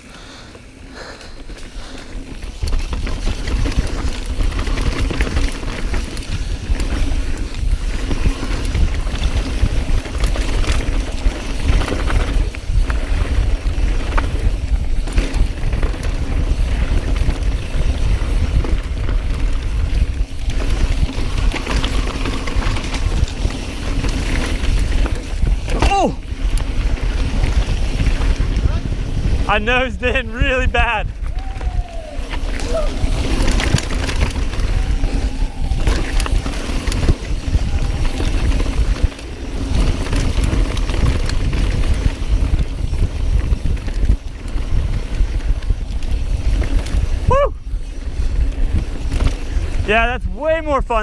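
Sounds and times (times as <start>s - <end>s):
bike rattling: 0.0s - 51.0s
tyres rumbling on dirt: 0.2s - 51.0s
wind on microphone: 1.8s - 51.0s.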